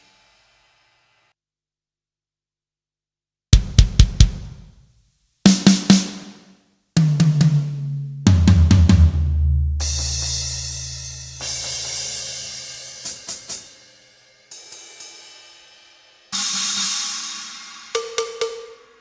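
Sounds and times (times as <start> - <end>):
snare and drum hits: 5.5 - 10.4, 18.0 - 18.9
cymbal crash: 9.6 - 13.6.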